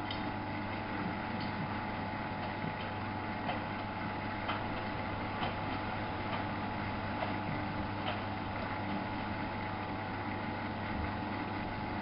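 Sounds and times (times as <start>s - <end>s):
washing machine humming: 0.0s - 12.0s.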